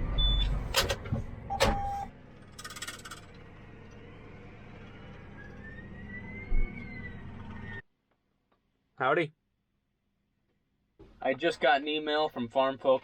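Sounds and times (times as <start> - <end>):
short beep: 1.5 - 2.1
rising whine: 3.3 - 7.8.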